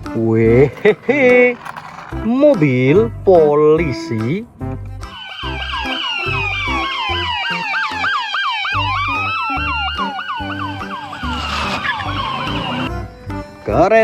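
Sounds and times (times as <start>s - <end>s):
electronic police siren wailing: 5.1s - 12.9s.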